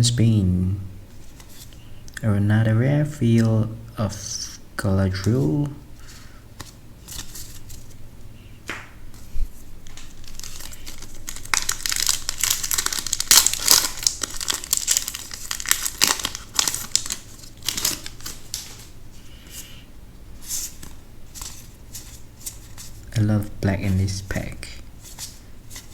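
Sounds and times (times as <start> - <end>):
foil wrapper crinkling: 9.8 - 19.0.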